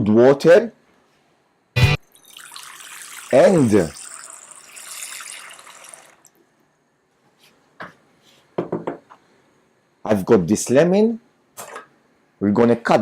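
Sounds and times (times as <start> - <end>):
tap water running into a bowl: 2.1 - 6.4.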